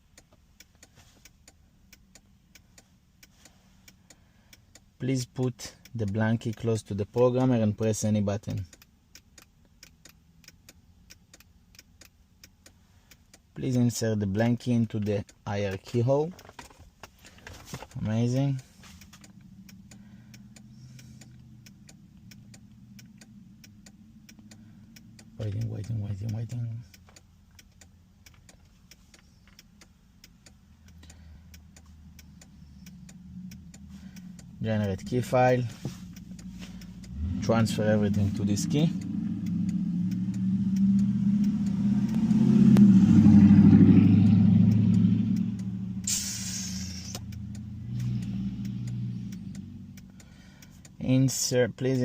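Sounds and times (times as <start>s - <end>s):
hazard light flasher ticking: 0.0s - 17.3s, 17.9s - 52.0s
engine idling: 17.2s - 51.0s.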